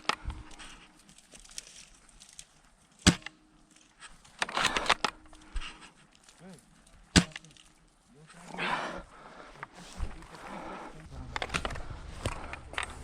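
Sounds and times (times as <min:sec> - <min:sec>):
clicking and rustling: 0:00.0 - 0:08.4, 0:11.2 - 0:13.0
airsoft gun shots: 0:03.0 - 0:03.4, 0:07.1 - 0:07.4.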